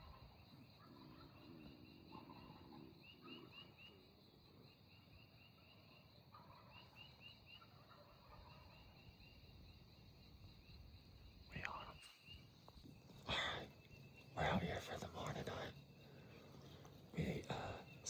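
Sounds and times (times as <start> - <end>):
distant turkeys gobbling: 13.2 - 17.8.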